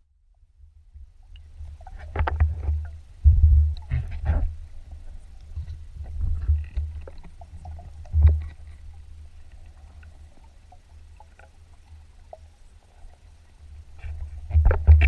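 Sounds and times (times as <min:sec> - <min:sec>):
underwater water rumble: 0:00.0 - 0:15.0
faint clicks underwater: 0:01.3 - 0:03.0, 0:05.3 - 0:12.6.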